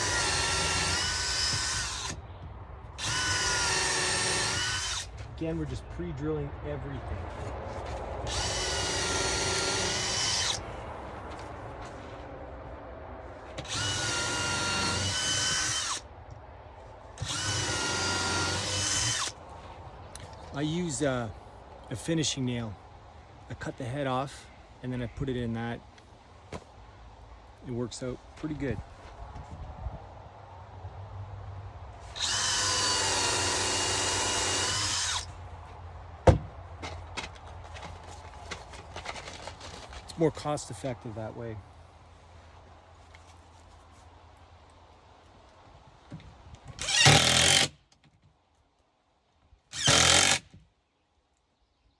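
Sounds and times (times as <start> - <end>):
power drill whining: 0.0 - 2.2, 3.0 - 5.1, 8.2 - 10.6, 13.6 - 16.0, 17.2 - 19.4, 32.1 - 35.3, 46.8 - 47.7, 49.7 - 50.4.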